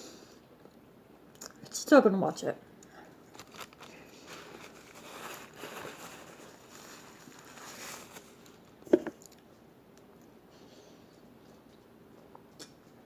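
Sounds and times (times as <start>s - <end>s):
soft rustling: 3.1s - 8.8s.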